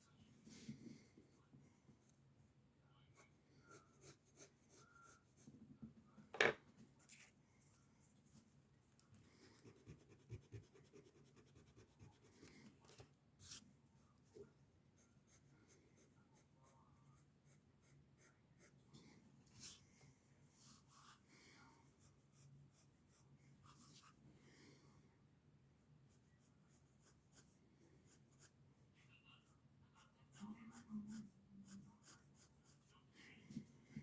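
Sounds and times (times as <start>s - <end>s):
pencil scratching on paper: 3.1s - 5.6s, 9.4s - 13.6s, 15.0s - 18.8s, 19.5s - 19.8s, 20.6s - 21.2s, 21.9s - 24.2s, 26.0s - 28.6s, 29.4s - 33.0s.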